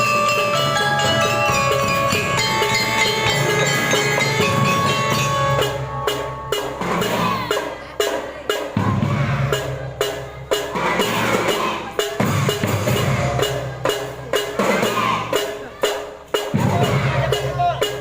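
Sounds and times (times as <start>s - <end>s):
held melodic notes: 0.0s - 10.6s.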